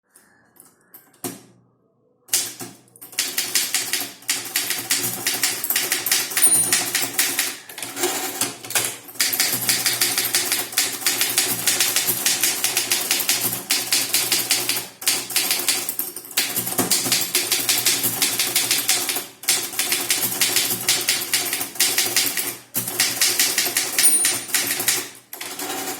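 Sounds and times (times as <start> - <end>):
typewriter key strikes: 2.3 - 7.6, 15.4 - 25.2.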